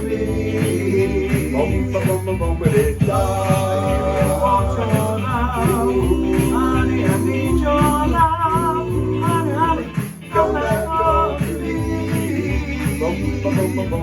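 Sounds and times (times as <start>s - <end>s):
band backing with steady beat: 0.0s - 14.0s
doo-wop group singing: 0.0s - 14.0s.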